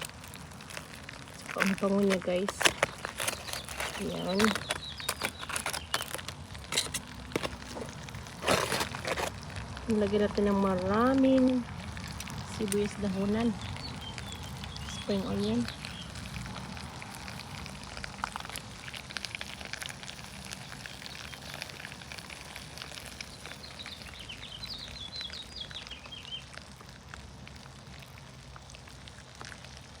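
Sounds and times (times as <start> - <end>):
fish sizzling on a grill: 0.0 - 30.0
bird chirping: 2.6 - 9.3.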